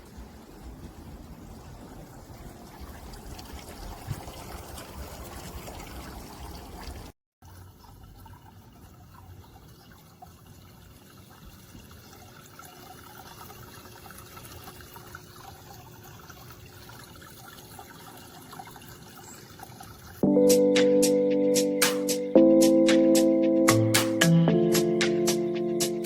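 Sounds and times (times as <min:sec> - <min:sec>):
fountain water trickling and splashing: 0:00.0 - 0:20.2.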